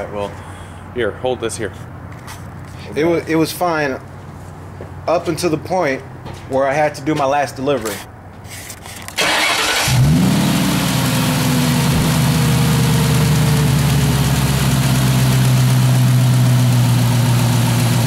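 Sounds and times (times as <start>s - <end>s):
car engine starting and idling: 9.1s - 18.0s.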